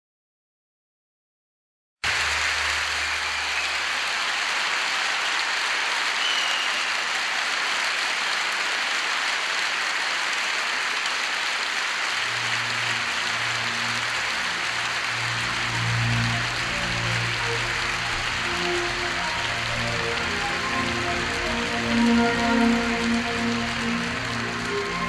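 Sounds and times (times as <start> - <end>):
audience applauding: 2.0 - 25.0
low sustained instrumental notes: 12.4 - 25.0.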